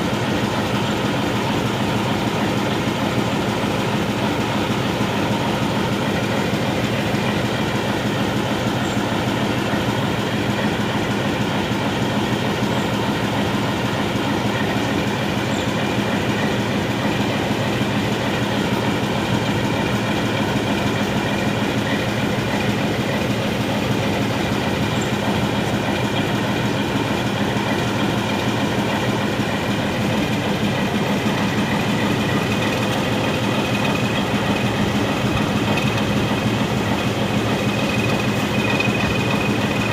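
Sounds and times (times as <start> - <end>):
diesel locomotive idling: 0.0 - 39.9
high steady whine: 27.7 - 39.9.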